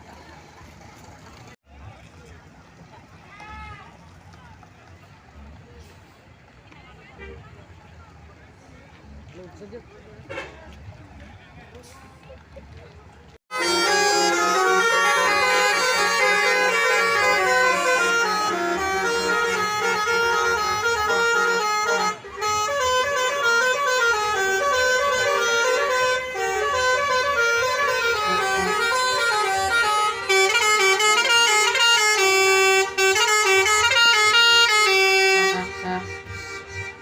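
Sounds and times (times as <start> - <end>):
musical bus horns: 13.5 - 37.0.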